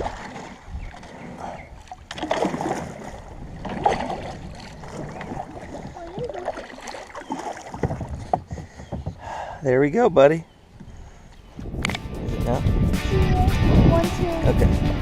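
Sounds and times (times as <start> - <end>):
water splashing: 0.0 - 9.0
paddle knocking on hull: 5.2 - 9.3.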